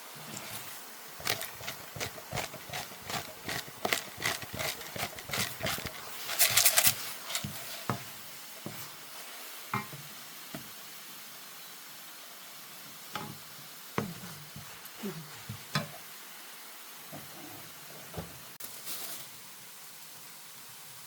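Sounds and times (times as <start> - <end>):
spatula scraping and tapping pan: 1.2 - 9.0, 9.7 - 10.0.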